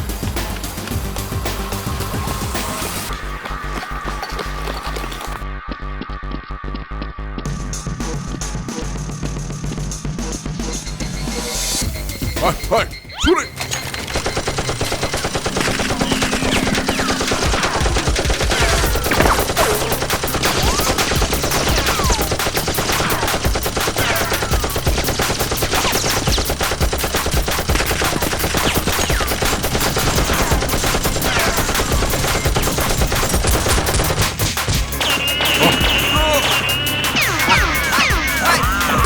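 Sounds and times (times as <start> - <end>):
rapid automatic gunfire: 14.0 - 36.7
short falling whistles: 34.9 - 39.0.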